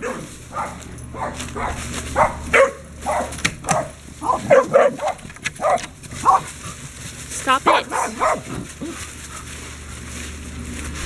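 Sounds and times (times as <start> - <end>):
puppy barking: 0.0 - 6.6, 7.5 - 9.1.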